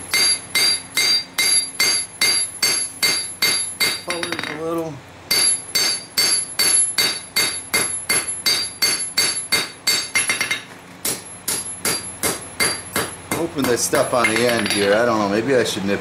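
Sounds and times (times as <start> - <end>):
hammer striking steel on anvil: 0.0 - 4.7, 5.3 - 15.0.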